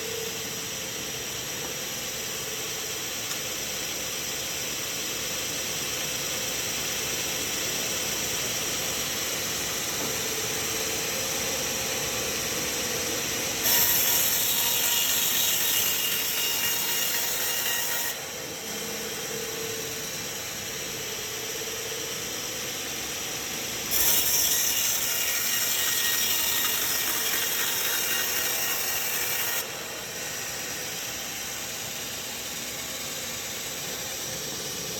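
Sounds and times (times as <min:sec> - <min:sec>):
sawmill machinery running: 0:07.0 - 0:34.9
saw hissing through log: 0:07.2 - 0:34.9.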